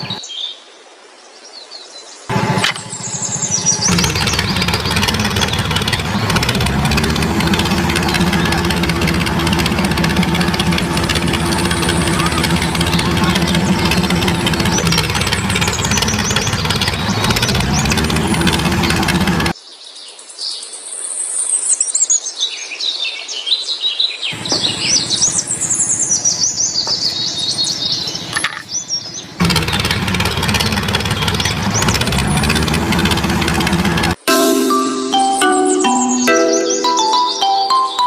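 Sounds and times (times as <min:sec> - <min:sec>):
birds chirping: 0:00.0 - 0:00.6, 0:01.5 - 0:20.6, 0:24.2 - 0:38.0
motor running: 0:02.3 - 0:19.5, 0:24.4 - 0:34.2.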